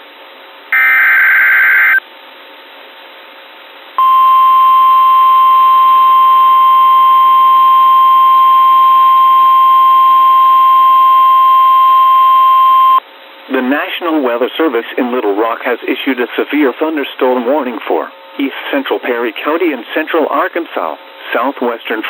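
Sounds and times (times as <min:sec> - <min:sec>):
steady warning alarm tone: 0:00.8 - 0:02.0, 0:04.0 - 0:13.0.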